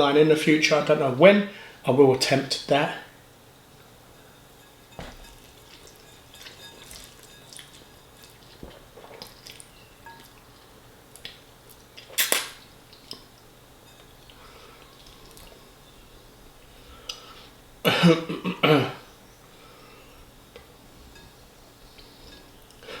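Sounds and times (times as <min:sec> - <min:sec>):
fork knocking on plate: 0:05.0 - 0:05.5
eating mouth noises: 0:12.0 - 0:13.3.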